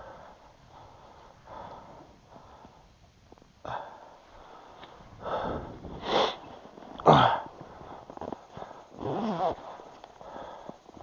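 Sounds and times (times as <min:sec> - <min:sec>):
man sniffing and exhaling: 0:03.7 - 0:06.5
man grunting: 0:07.0 - 0:07.5.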